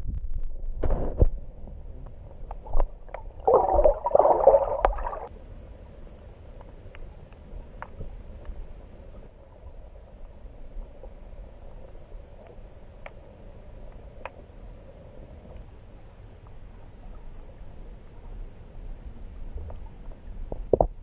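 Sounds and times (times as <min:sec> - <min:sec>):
faint steady hiss: 0:00.9 - 0:21.0
gurgling rush of water: 0:02.6 - 0:05.3.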